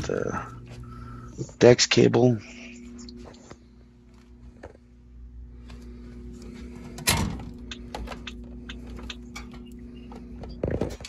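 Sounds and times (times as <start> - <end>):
steady low hum: 0.0 - 11.0
cables and connectors clicking: 7.0 - 11.0.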